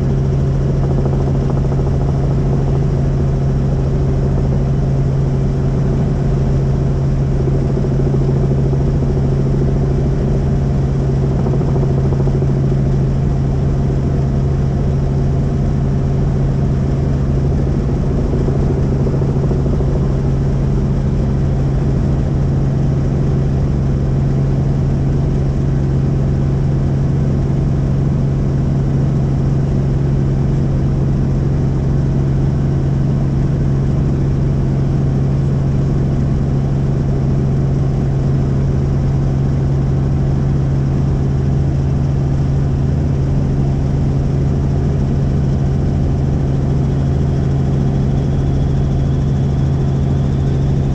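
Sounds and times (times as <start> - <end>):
helicopter engine and rotor: 0.0 - 50.9.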